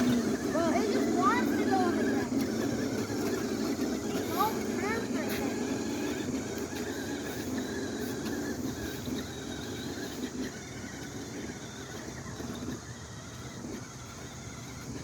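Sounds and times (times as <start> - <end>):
toy car motor whirring: 0.0 - 15.0.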